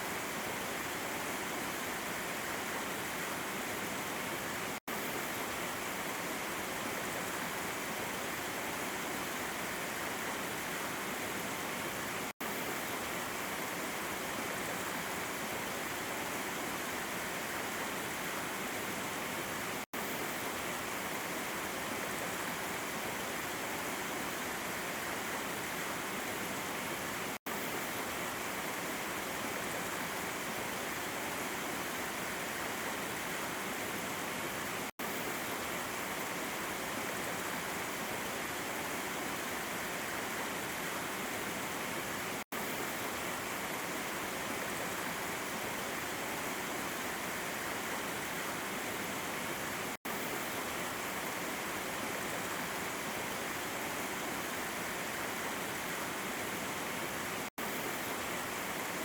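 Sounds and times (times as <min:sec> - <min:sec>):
waterfall rushing over rocks: 0:00.0 - 0:59.0.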